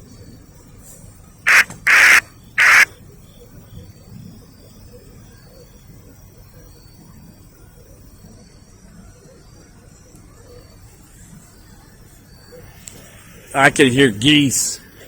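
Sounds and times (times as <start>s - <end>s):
bird calling: 1.5s - 2.9s.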